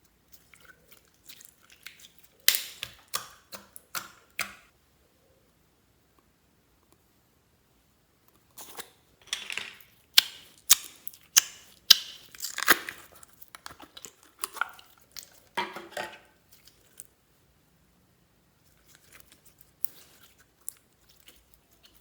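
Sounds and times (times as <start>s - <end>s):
slime popping and squelching: 0.4s - 4.6s, 10.1s - 15.6s.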